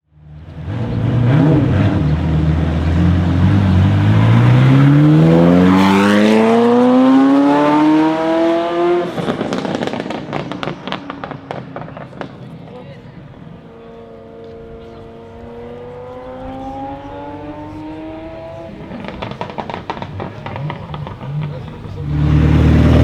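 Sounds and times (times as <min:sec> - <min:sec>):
sports car engine accelerating: 0:00.2 - 0:23.0
exhaust crackles and pops: 0:09.0 - 0:23.0.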